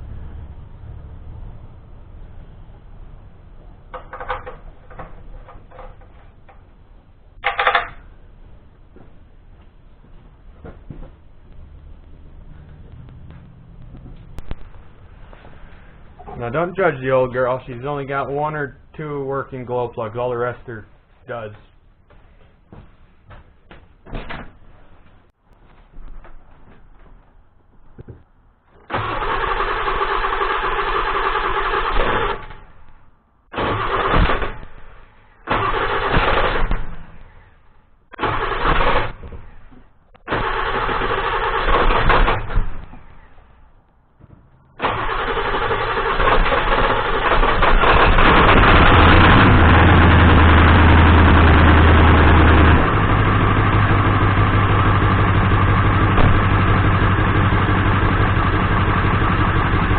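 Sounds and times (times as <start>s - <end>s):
diesel engine running: 0.0s - 6.6s, 44.7s - 59.9s
diesel starter cranking: 28.8s - 32.9s, 33.5s - 37.4s, 38.1s - 43.2s, 44.7s - 59.9s.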